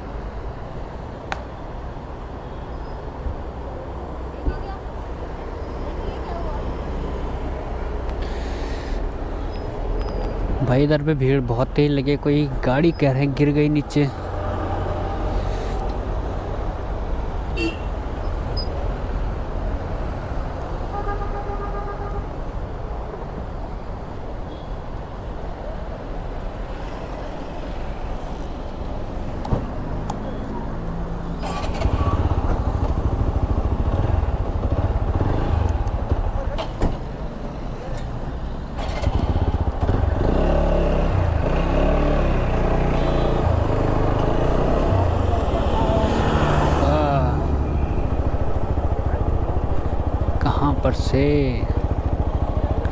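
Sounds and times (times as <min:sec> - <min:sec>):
motorcycle and traffic rumble: 0:00.0 - 0:52.9
vehicle horn: 0:17.5 - 0:18.0, 0:20.9 - 0:22.4, 0:42.9 - 0:43.5.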